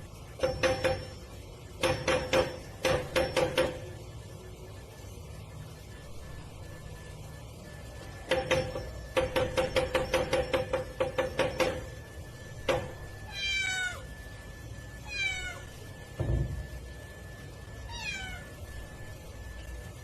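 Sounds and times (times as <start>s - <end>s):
faint steady high tone: 0.0s - 20.0s
cat meowing: 13.3s - 14.1s, 15.0s - 15.7s, 17.9s - 18.5s.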